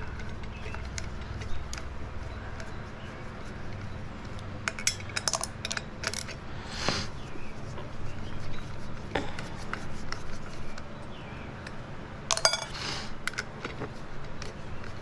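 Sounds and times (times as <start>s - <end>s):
metal parts and tools clinking: 4.6s - 6.4s, 12.3s - 13.5s.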